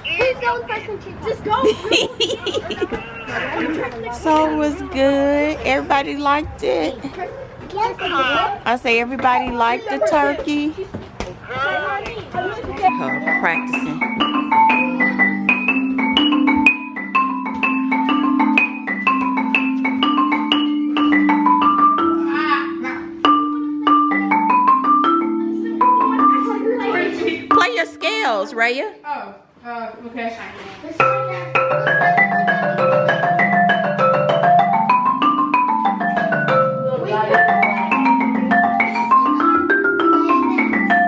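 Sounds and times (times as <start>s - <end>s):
marimba-like mallet notes: 1.6s - 7.2s, 12.6s - 28.9s, 31.0s - 41.0s.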